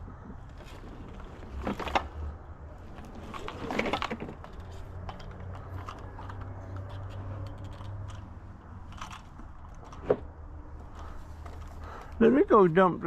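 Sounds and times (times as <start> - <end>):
scrap metal rattling in a bucket: 2.9 - 8.2.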